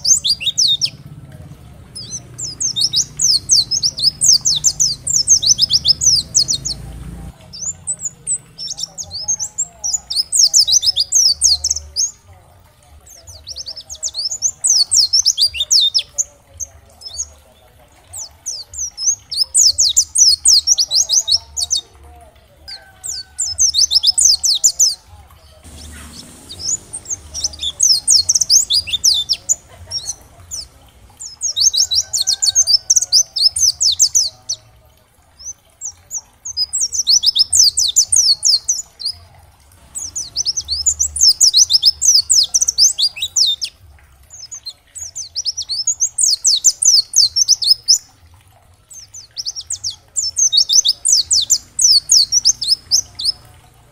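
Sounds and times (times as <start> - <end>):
bird twittering: 0.0 - 1.1, 2.0 - 12.2, 25.6 - 34.6, 35.4 - 39.2, 39.9 - 48.0, 49.0 - 53.6.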